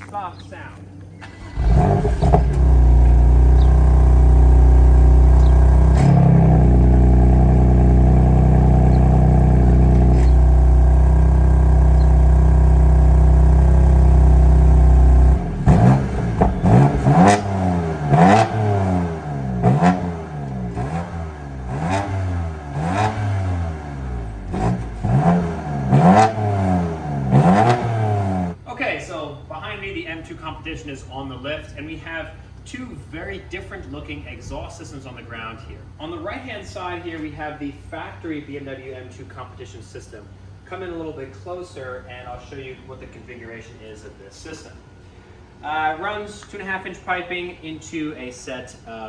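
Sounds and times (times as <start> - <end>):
car engine idling: 1.1 - 28.6
car engine revving: 1.2 - 28.6.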